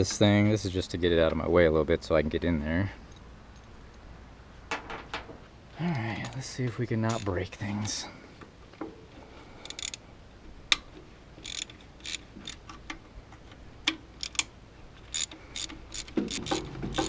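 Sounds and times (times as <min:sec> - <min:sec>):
hand tools clicking on metal: 0:06.0 - 0:07.3.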